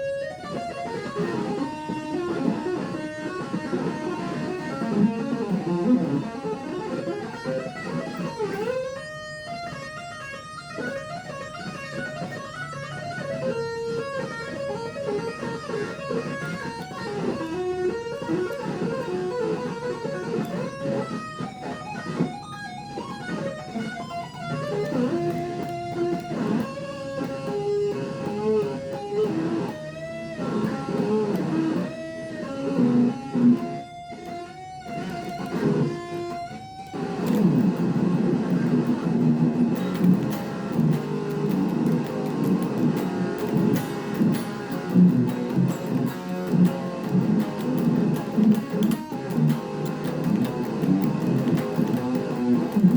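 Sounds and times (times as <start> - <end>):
electric guitar lead line: 0.0 - 52.9.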